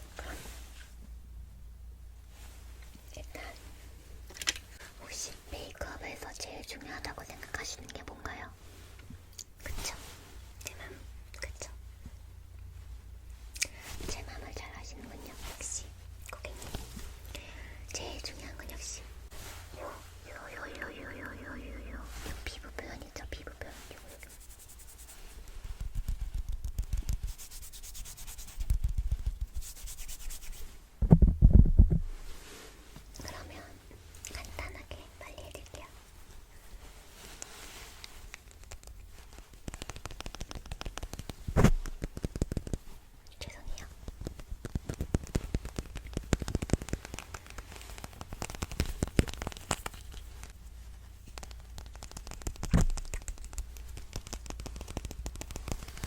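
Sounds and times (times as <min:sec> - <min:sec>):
scratching on microphone: 0:18.0 - 0:56.0
muffled bumps: 0:31.0 - 0:32.3, 0:39.7 - 0:43.0, 0:43.9 - 0:56.0
art supplies tapping and clicking: 0:39.6 - 0:42.8, 0:44.0 - 0:50.3, 0:51.2 - 0:56.0.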